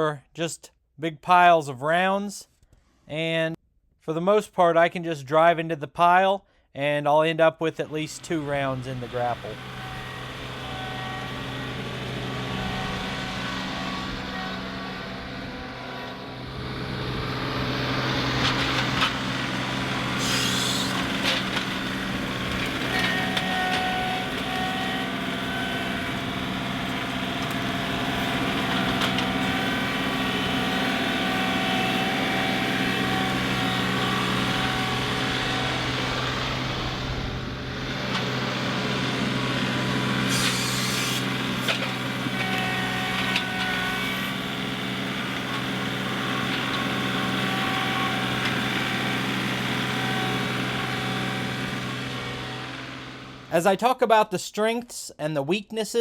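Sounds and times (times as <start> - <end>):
tractor diesel engine running: 7.9 - 53.6.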